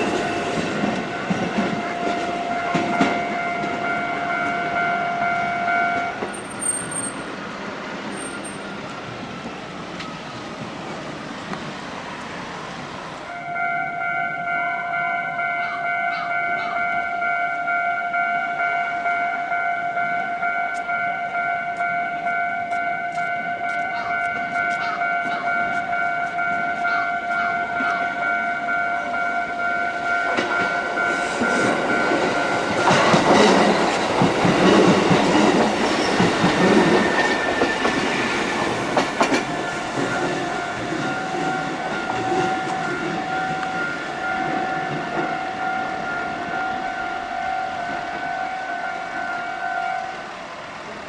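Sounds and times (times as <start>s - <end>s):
level crossing alarm ringing: 0.0s - 7.3s, 13.3s - 50.2s
train wheels clicking over rails: 30.1s - 46.5s.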